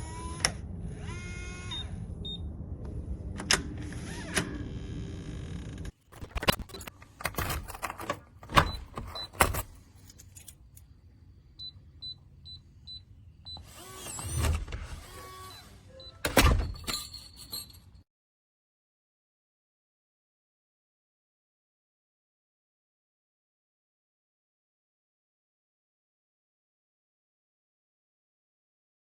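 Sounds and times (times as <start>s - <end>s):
lock motor whirring: 0.0s - 2.0s, 2.9s - 9.8s, 13.5s - 16.9s
lock knocks and clicks: 6.6s - 10.3s.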